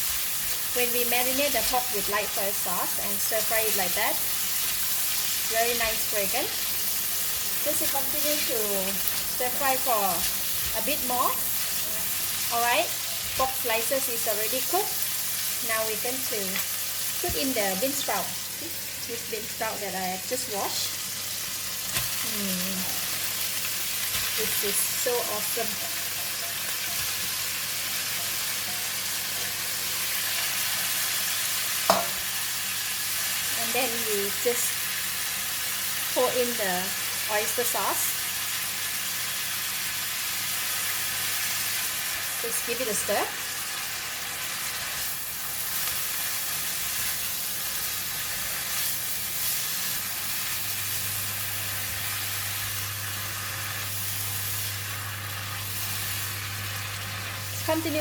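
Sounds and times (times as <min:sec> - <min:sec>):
food sizzling in hot oil: 0:00.0 - 0:58.0.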